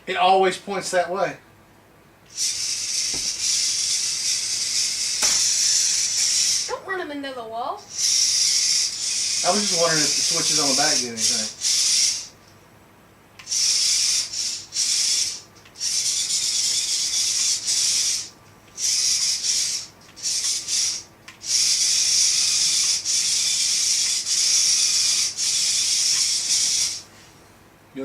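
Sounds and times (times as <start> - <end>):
robot motors and gears whirring: 2.3 - 6.7, 7.9 - 12.3, 13.4 - 27.0.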